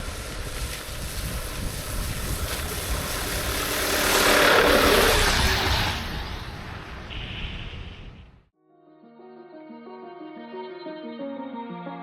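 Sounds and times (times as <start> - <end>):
vehicle passing by: 0.0 - 7.1.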